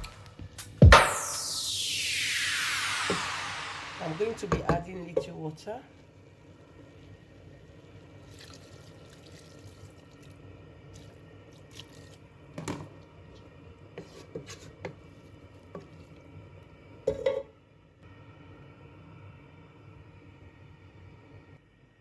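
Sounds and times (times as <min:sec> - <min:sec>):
water pouring into a pot: 0:08.2 - 0:10.4.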